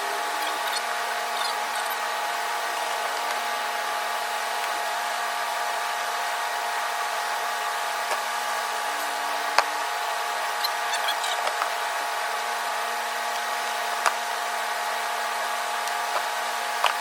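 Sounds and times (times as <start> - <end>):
motor-like hum: 0.0 - 17.0.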